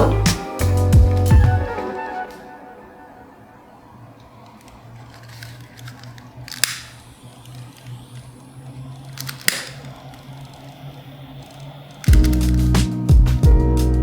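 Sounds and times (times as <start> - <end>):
sharp clicks: 4.5 - 13.2.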